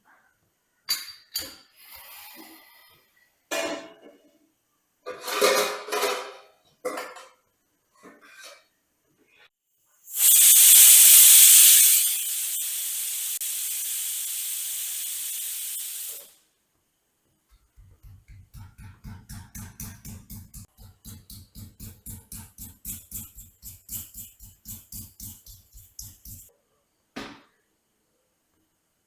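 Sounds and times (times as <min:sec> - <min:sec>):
steam hissing: 0:10.1 - 0:16.4, 0:22.9 - 0:26.5.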